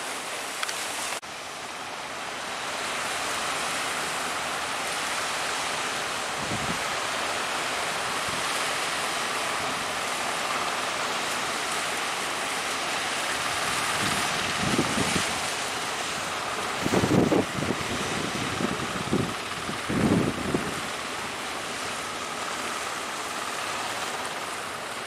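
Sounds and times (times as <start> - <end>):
sea surf rushing: 0.0 - 25.0
strong wind: 6.0 - 7.2, 13.4 - 22.1
wind buffets on microphone: 6.3 - 7.0, 13.4 - 21.4.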